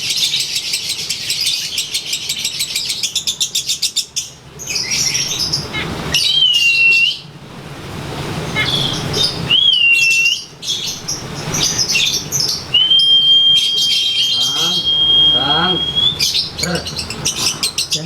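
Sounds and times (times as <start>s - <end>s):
lovebird whistled notes: 6.1s - 7.3s, 8.6s - 10.8s, 11.6s - 16.5s
lovebird shrill chattering: 8.5s - 18.0s.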